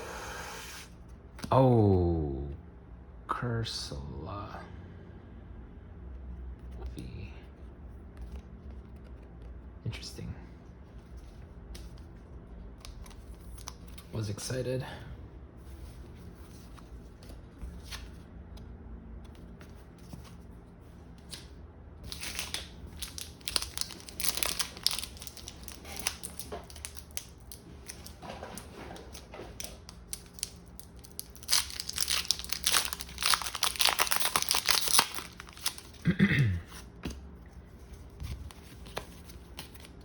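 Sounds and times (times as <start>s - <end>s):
foil wrapper crackling: 22.1s - 28.2s, 29.6s - 36.0s.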